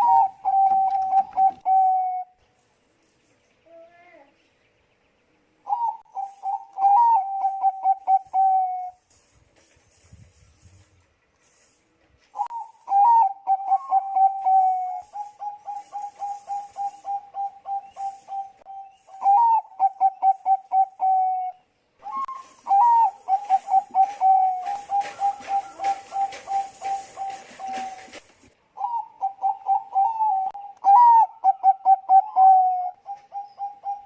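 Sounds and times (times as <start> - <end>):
zebra dove cooing: 5.7 - 9.0, 12.4 - 28.2, 28.8 - 34.0.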